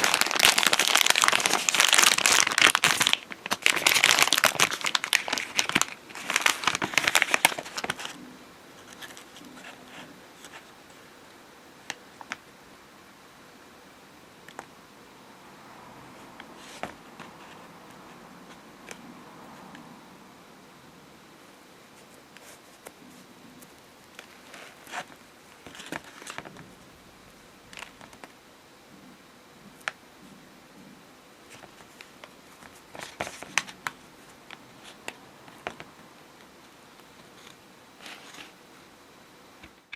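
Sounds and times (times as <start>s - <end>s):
plastic bag crinkling: 0.0s - 8.2s, 24.1s - 26.6s, 31.5s - 35.9s
package rustling and tapping: 31.6s - 35.9s.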